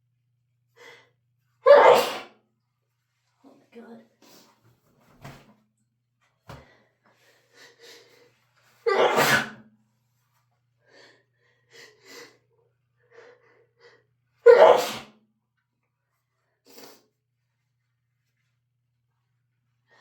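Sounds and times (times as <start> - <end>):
person sneezing: 1.6 - 2.3, 8.9 - 9.6, 14.5 - 15.1.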